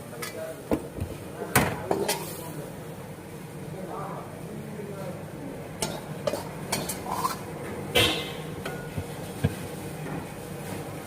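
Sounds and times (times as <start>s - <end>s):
metal utensil scraping cooking pot: 5.8s - 9.0s.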